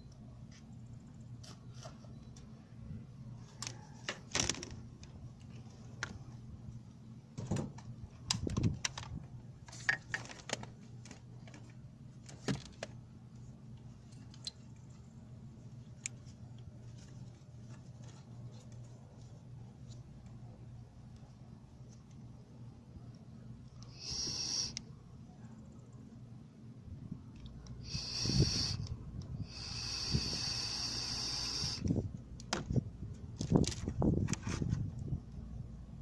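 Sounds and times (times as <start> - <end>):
steady low hum: 0.0 - 36.0
clicks and rattles of handling: 7.5 - 13.0.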